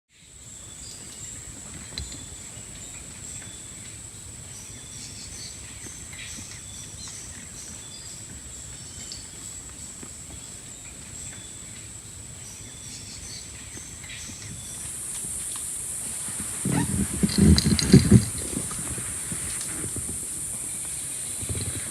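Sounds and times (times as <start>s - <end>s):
high-pitched insect drone: 14.6s - 21.9s.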